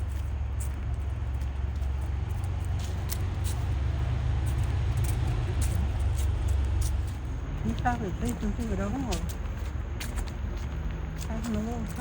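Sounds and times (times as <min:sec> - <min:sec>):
steady low rumble: 0:00.0 - 0:12.0.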